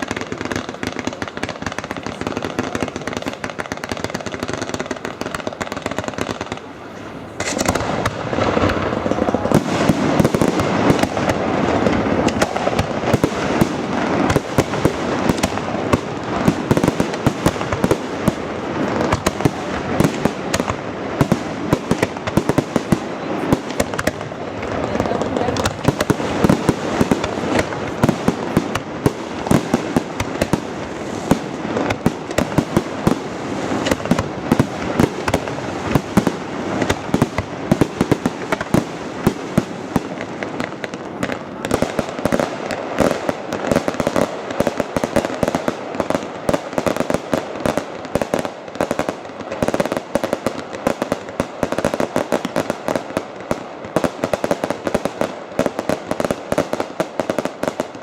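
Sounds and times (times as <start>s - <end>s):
fireworks bangs and crackles: 0.0s - 58.0s.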